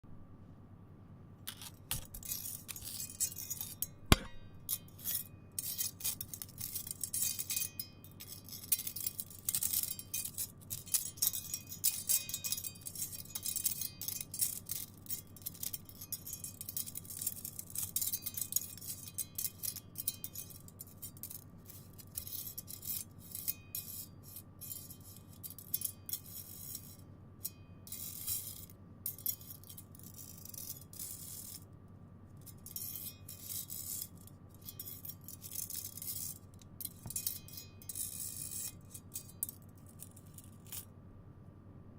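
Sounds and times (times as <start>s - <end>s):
metal chain scraping thin metal: 1.5s - 31.7s, 32.4s - 40.9s
sharp knock: 4.1s - 4.6s.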